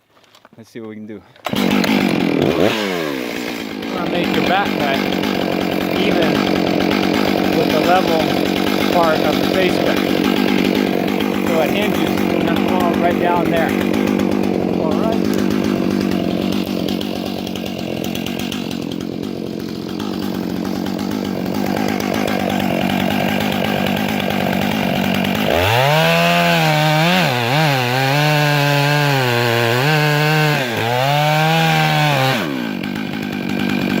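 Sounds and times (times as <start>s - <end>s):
chainsaw cutting wood: 1.3s - 34.0s.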